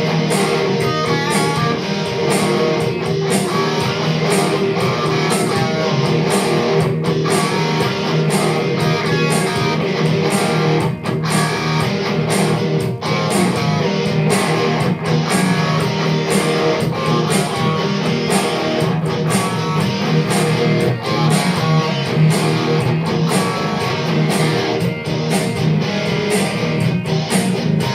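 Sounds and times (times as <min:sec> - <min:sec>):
guitar strummed and plucked: 0:00.0 - 0:27.9.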